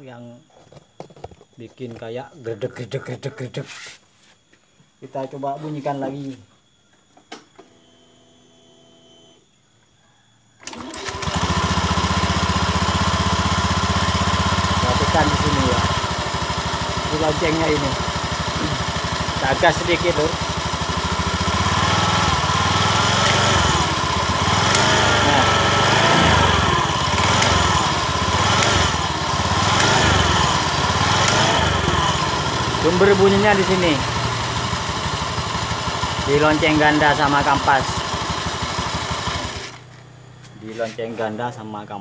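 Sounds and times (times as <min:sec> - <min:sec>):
scooter engine starting and idling: 0:10.6 - 0:40.2.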